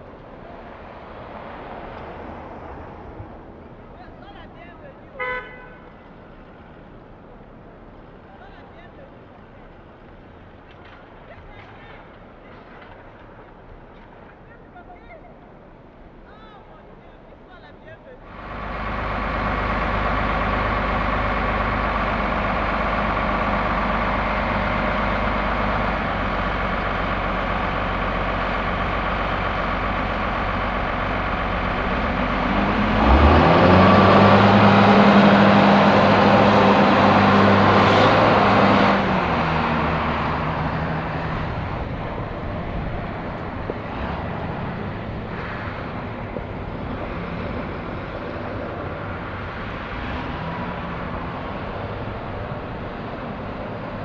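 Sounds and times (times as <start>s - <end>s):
general traffic noise: 0.0s - 54.0s
heavy vehicle engine revving: 18.2s - 54.0s.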